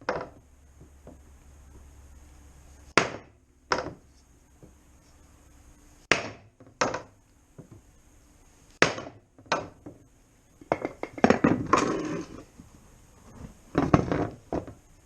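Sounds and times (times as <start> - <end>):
hammer striking plastic plate: 3.0 - 4.0, 6.1 - 7.1, 8.8 - 9.8.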